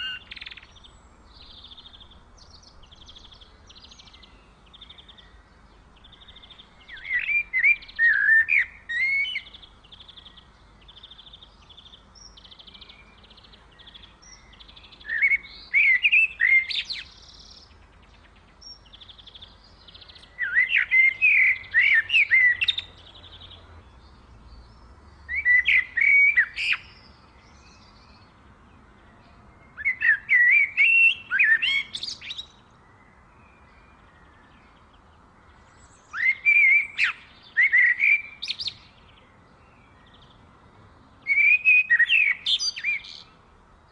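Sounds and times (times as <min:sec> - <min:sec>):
songbird chirping phrases: 0:00.0 - 0:43.9.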